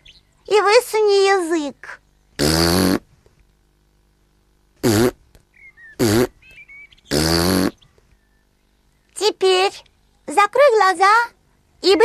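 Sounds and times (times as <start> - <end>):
buzzy piglet voice: 0.5 - 3.0, 9.2 - 12.0
cartoon piglet hiccups: 2.4 - 3.0, 4.8 - 5.2, 6.0 - 6.3, 7.1 - 7.8.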